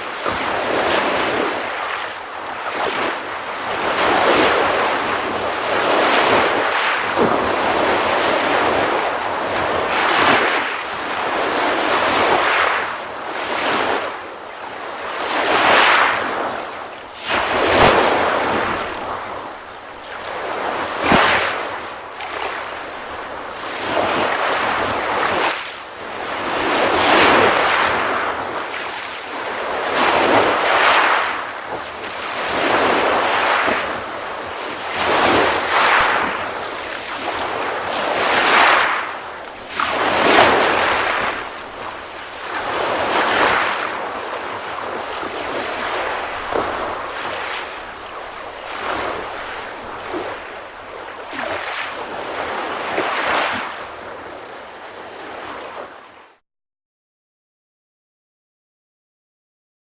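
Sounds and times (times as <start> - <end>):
ocean waves breaking on shore: 0.0 - 56.4.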